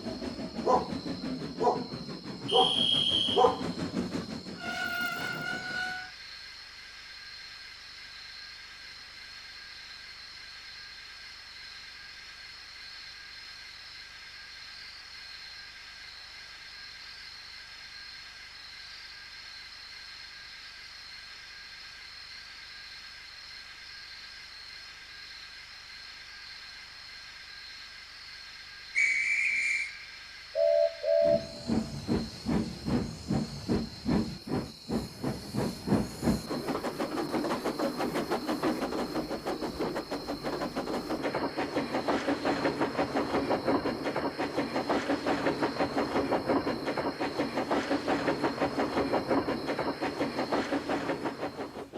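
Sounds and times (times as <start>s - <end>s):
locomotive exhaust chuffing: 0.0s - 6.1s, 30.6s - 51.9s
steam hissing: 0.0s - 6.1s, 30.6s - 51.9s
locomotive whistle: 2.4s - 3.8s, 4.6s - 6.1s, 29.0s - 32.0s.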